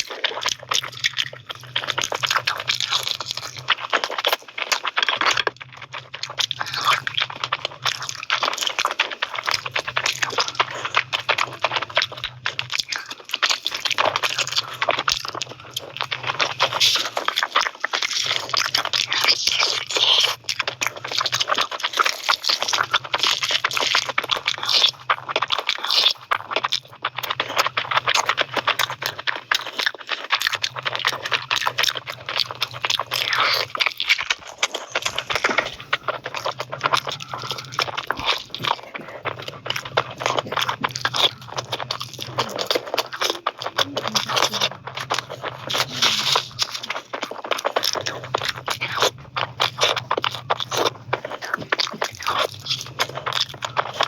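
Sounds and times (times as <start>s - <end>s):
chewing and crunching: 0.0s - 54.0s
wet clicks and smacks: 0.0s - 54.0s
low hum: 30.8s - 47.1s.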